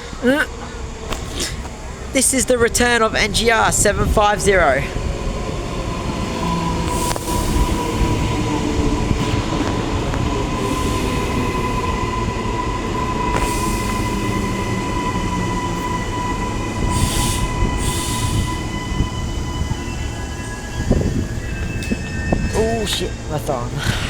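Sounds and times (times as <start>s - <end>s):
electric train whine: 0.0s - 24.0s
train wheels rumbling: 0.0s - 24.0s
air hiss bursts: 6.8s - 8.5s, 10.6s - 12.0s, 13.0s - 19.5s.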